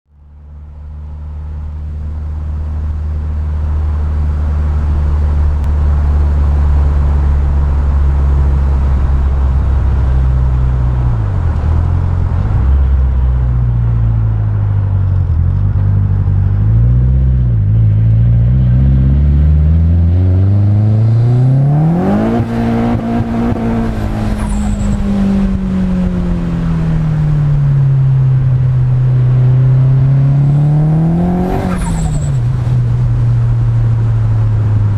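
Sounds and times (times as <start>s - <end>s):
car engine running and revving: 0.1s - 34.9s.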